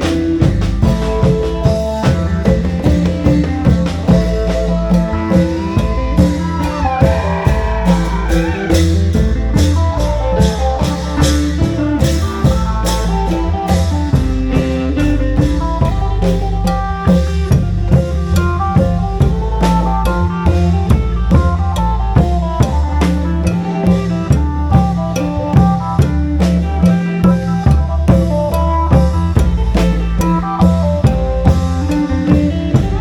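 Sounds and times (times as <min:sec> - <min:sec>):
fast drum beat: 0:00.0 - 0:33.0
sustained reed-like notes: 0:03.7 - 0:10.2.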